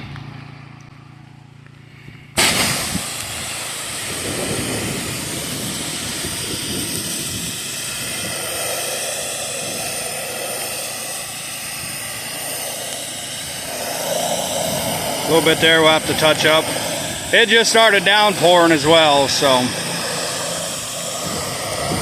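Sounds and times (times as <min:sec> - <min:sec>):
pressure washer spray hissing: 0:02.4 - 0:22.0.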